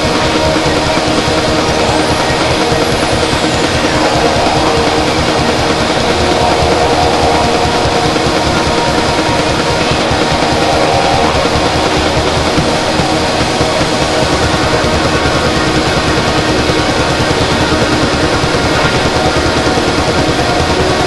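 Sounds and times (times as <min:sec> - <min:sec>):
droning noise music: 0:00.0 - 0:21.0
held low tones: 0:00.0 - 0:21.0.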